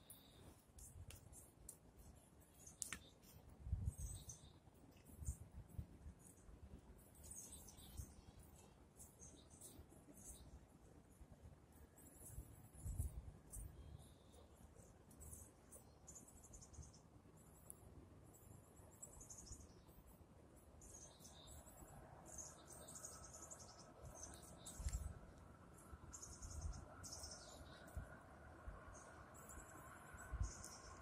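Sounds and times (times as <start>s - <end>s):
crickets chirping: 25.6s - 31.0s.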